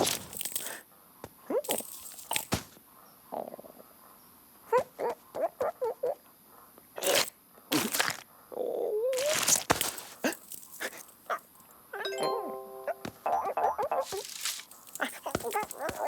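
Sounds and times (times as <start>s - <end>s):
squeaky cartoon vocal chirps: 12.9s - 14.4s.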